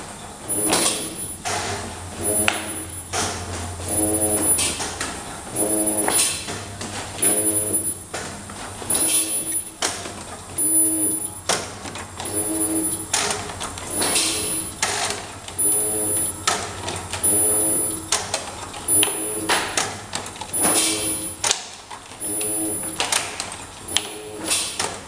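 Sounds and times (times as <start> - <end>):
thin high whine: 0.0 - 18.2, 20.6 - 21.4, 22.2 - 23.1
welding machine sharp bursts: 0.4 - 10.0, 10.6 - 25.0.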